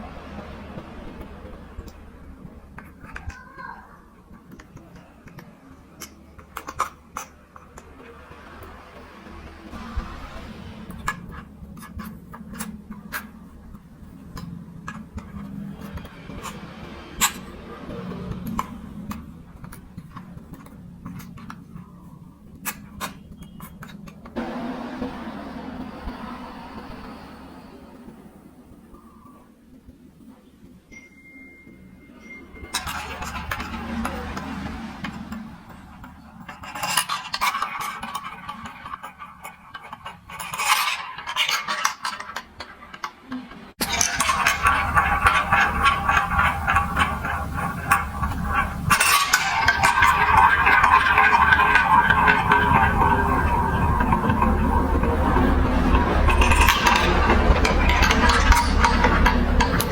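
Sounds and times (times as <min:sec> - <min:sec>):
steady rattling: 0:32.2 - 0:59.9.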